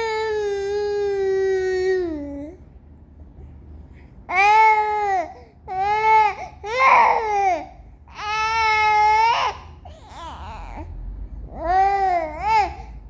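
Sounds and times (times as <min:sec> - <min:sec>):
baby crying: 0:04.3 - 0:10.9.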